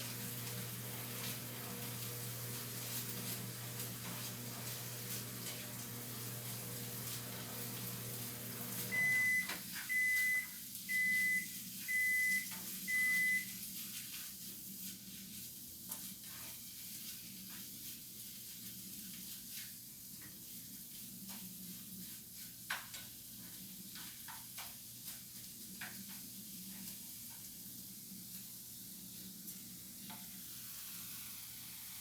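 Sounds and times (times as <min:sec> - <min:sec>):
microwave oven humming: 0:00.0 - 0:13.5
high beeps: 0:09.0 - 0:13.4.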